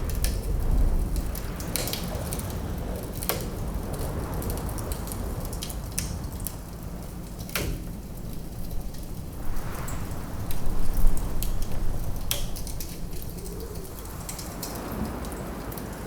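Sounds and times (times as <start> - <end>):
wood fire crackling: 0.0 - 16.0
low rumble: 8.6 - 14.4.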